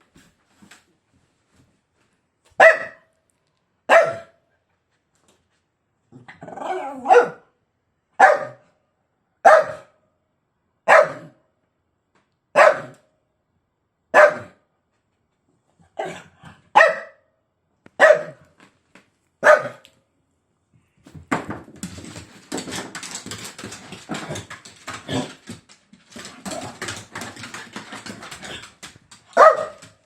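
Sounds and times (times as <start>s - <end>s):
dog barking: 2.6s - 3.1s, 3.9s - 4.4s, 6.8s - 7.5s, 8.2s - 8.7s, 9.4s - 10.0s, 10.8s - 11.4s, 12.6s - 13.1s, 14.1s - 14.6s, 16.0s - 17.3s, 18.0s - 18.5s, 19.4s - 19.8s, 29.4s - 30.0s.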